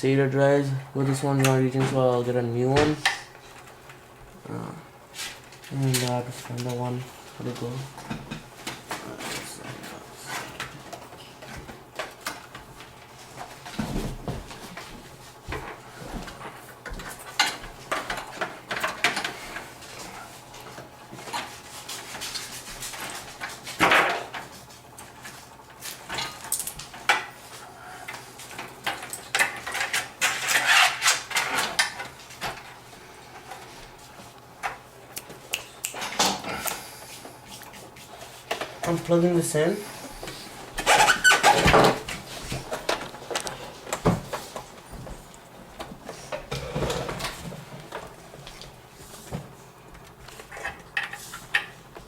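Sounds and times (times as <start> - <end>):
clatter of hard items: 15.5 - 21.5, 28.1 - 32.7, 45.8 - 48.1.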